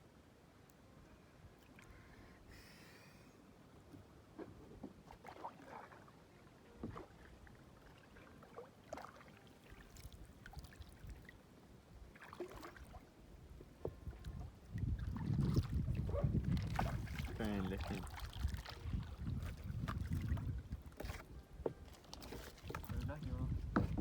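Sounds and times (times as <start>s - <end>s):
water knocks and splashes: 6.8s - 7.4s, 12.2s - 13.0s, 13.6s - 24.0s
wind rumble on microphone: 13.4s - 21.8s, 22.7s - 24.0s.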